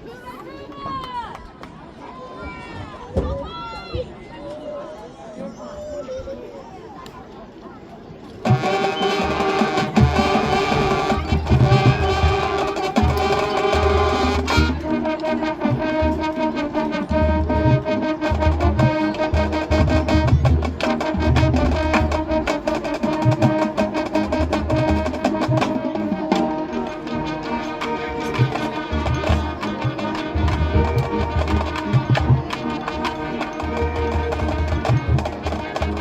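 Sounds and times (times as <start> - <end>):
driving drum beat: 8.4 - 14.8
brass holding chords: 8.4 - 36.0.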